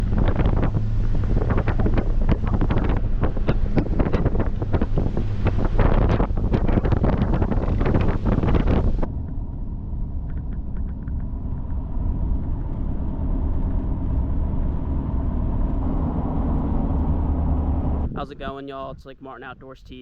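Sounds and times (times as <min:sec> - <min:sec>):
rushing wind and water: 0:00.0 - 0:09.2
engine running low rumble: 0:00.0 - 0:20.0.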